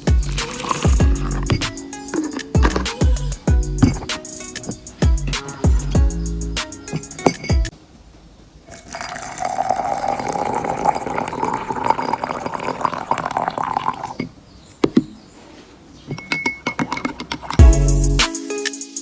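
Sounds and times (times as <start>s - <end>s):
glass clink: 0.4s - 3.0s, 3.8s - 4.2s, 6.9s - 7.7s, 8.7s - 14.4s, 16.1s - 17.8s
liquid poured into a glass: 8.7s - 14.2s.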